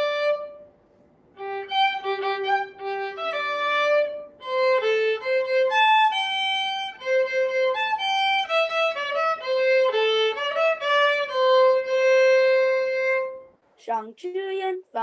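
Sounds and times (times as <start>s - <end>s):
violin melody: 0.0s - 0.7s, 1.4s - 13.6s.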